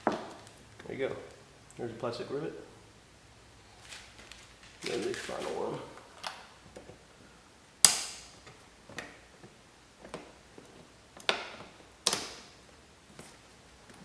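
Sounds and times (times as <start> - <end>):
metal punch clicking on rivet: 7.8 - 8.3.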